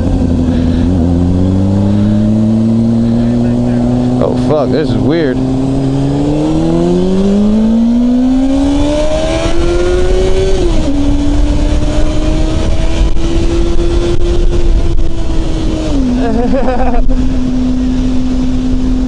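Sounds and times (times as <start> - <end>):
motorcycle engine accelerating: 0.0 - 19.0
wind rumble on microphone: 5.4 - 19.0.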